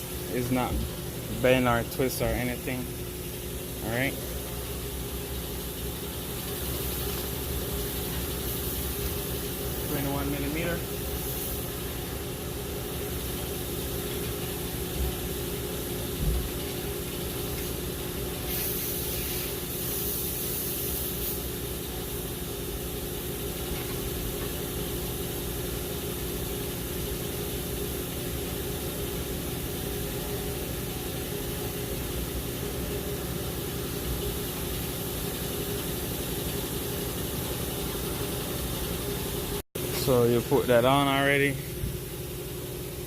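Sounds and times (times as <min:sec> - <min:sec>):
steady hiss: 0:17.4 - 0:22.2.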